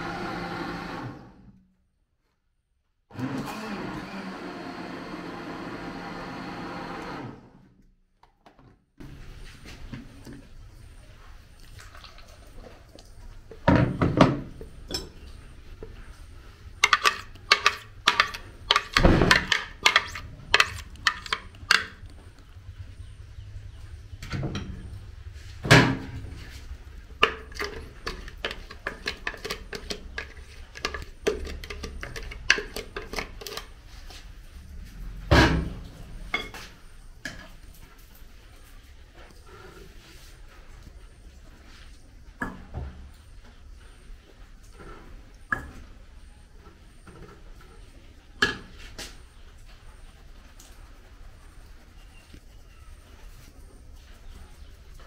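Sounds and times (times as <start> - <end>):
dishes and utensils clinking: 13.6 - 15.5, 16.8 - 22.0.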